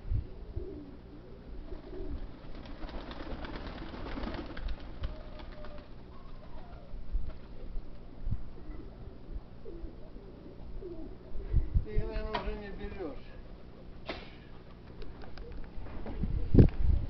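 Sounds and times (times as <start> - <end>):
pigeons cooing: 0.0 - 11.8.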